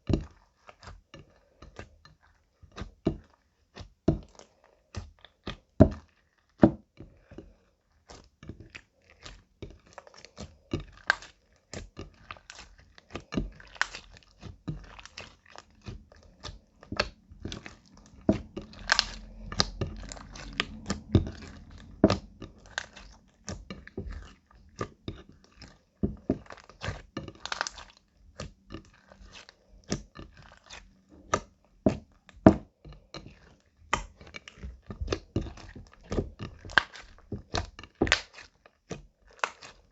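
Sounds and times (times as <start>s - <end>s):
slime squished by hand: 8.0s - 32.7s, 33.6s - 39.9s.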